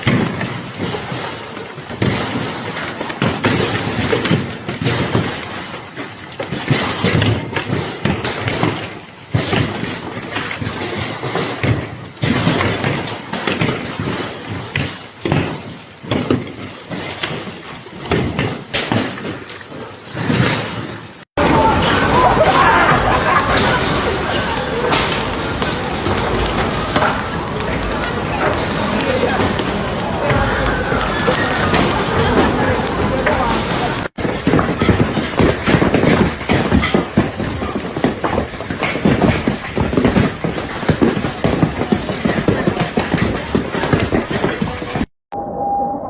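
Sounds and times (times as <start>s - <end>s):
hailstones pelting: 21.4s - 45.1s.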